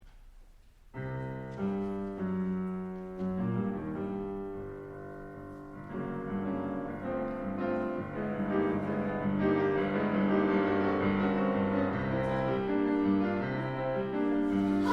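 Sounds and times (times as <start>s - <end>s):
piano chords ringing: 0.9s - 14.9s.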